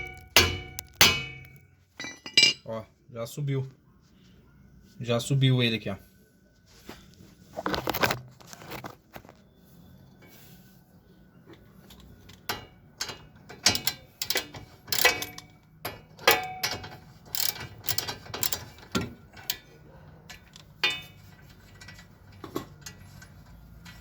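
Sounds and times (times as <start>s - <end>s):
hand tools knocking on metal: 0.0s - 2.6s.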